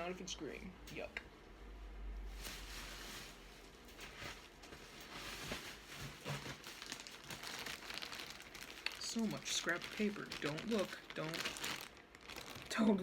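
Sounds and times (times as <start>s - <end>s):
paper rustling: 4.0s - 12.9s.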